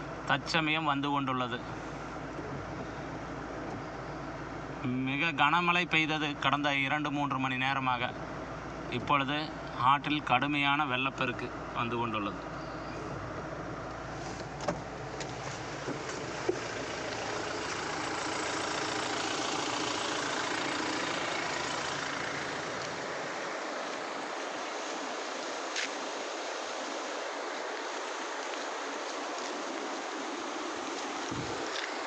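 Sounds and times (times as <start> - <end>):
floodwater rushing in stream: 14.0 - 32.0.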